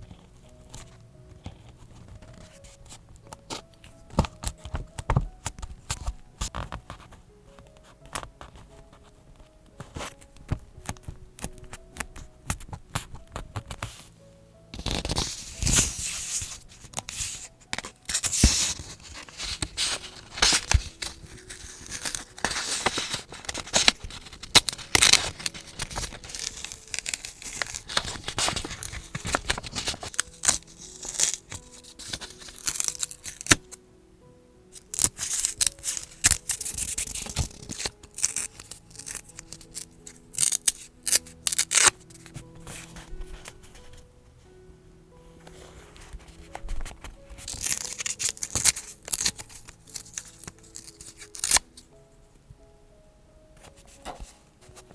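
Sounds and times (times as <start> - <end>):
soft background music: 0.0 - 54.9
scissors snipping paper: 0.1 - 7.2, 9.9 - 14.0, 14.8 - 33.7, 34.7 - 43.6, 45.9 - 51.9
paper tearing: 14.8 - 33.7, 34.8 - 43.6, 46.0 - 51.6.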